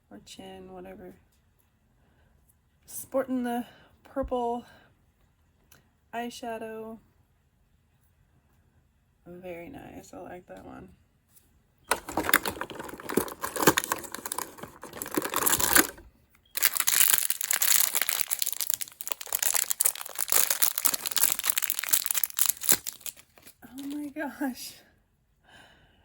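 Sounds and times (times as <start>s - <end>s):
packaging wrapper crinkling and tearing: 11.9s - 16.0s, 16.6s - 24.2s.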